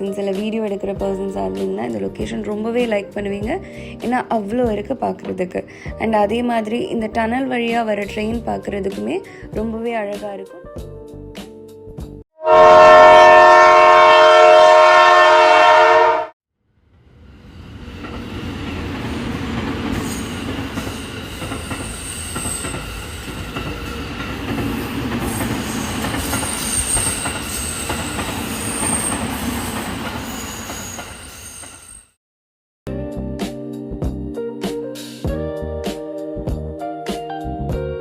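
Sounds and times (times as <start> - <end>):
train horn blast: 12.4 - 16.4
train rumbling along track: 16.9 - 31.8
wheel squeal: 20.0 - 24.0, 25.3 - 32.2.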